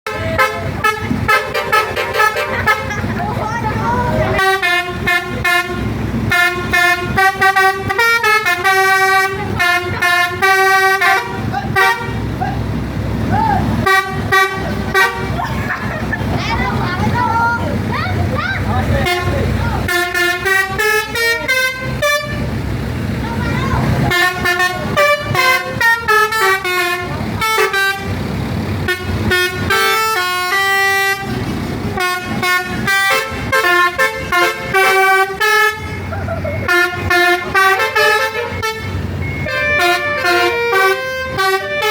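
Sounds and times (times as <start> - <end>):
bus horn playing a tune: 0.0 - 12.6, 13.6 - 16.1, 18.9 - 22.8, 23.4 - 41.9.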